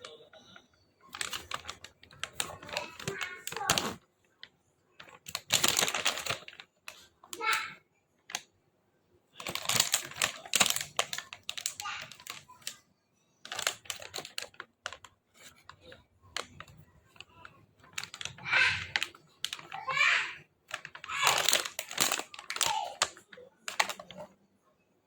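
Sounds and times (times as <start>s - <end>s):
small hard objects clattering: 1.1s - 4.0s, 5.0s - 7.1s, 9.4s - 12.8s, 13.4s - 24.3s.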